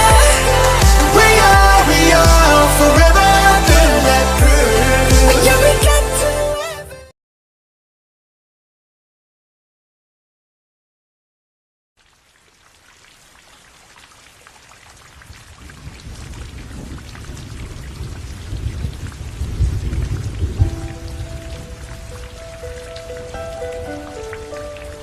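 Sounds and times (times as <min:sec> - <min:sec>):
heavy rain: 0:00.0 - 0:06.3, 0:12.0 - 0:25.0
thunder rumbling: 0:15.6 - 0:25.0.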